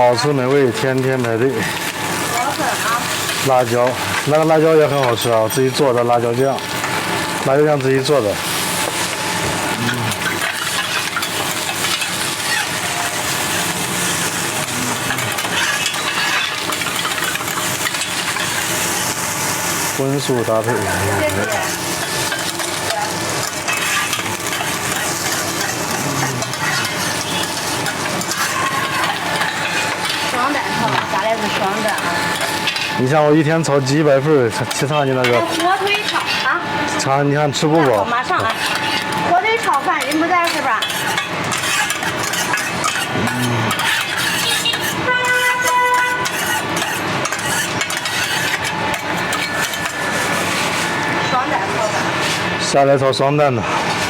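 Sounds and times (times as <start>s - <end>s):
rice sizzling on griddle: 0.0s - 54.0s
spatulas scraping griddle: 0.0s - 54.0s
vehicle horn: 44.3s - 46.4s.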